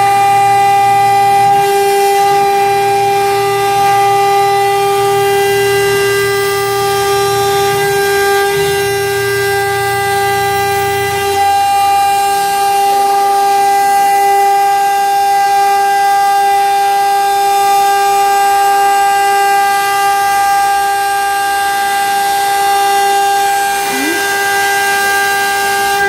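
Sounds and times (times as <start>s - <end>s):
router spindle whining: 0.0s - 26.0s.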